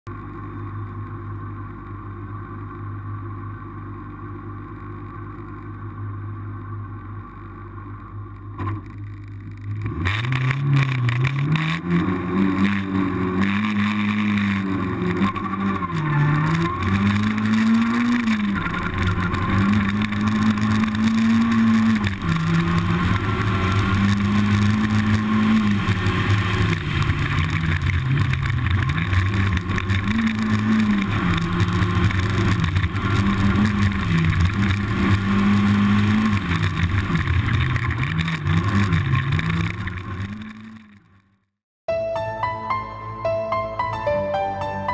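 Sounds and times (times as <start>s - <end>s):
low engine hum: 0.1s - 41.4s
engine revving hard: 9.8s - 41.1s.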